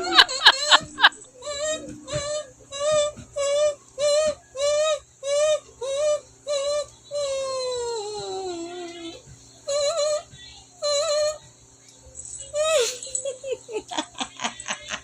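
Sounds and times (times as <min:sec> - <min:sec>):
woman making howling calls: 0:00.0 - 0:11.4.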